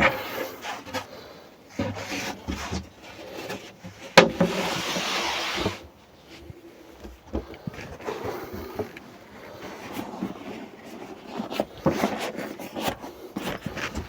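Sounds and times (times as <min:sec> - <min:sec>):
plywood thumps and clunks: 0:01.8 - 0:04.6
board scraping as it slides: 0:01.8 - 0:06.0.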